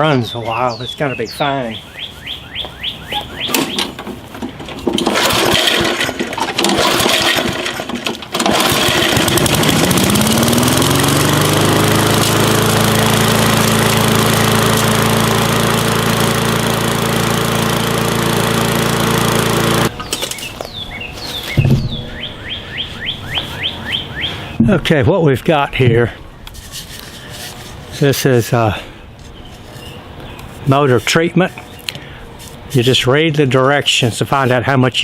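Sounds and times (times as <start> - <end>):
lawn mower engine starting: 3.1 - 23.7.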